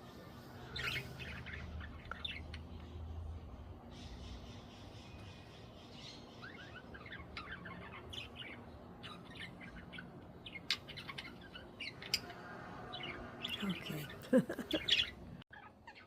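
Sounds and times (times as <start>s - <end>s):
budgerigars chirping: 3.9s - 12.4s.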